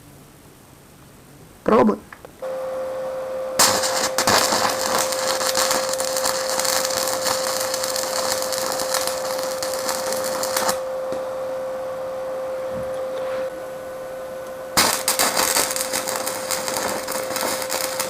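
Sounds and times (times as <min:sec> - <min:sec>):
steady hum: 0:00.0 - 0:18.0
arc welder crackling and sizzling: 0:02.4 - 0:11.5, 0:13.1 - 0:18.0.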